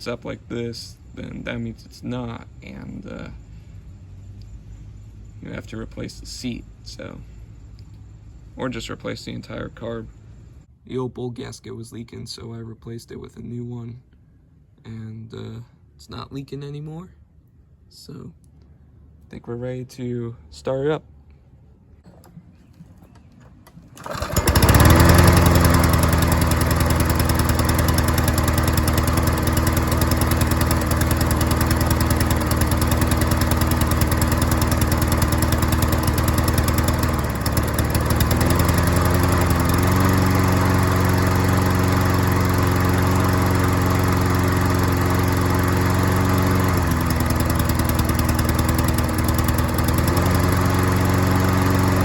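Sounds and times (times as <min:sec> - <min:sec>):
lawn mower engine starting and running: 0:22.1 - 0:52.0.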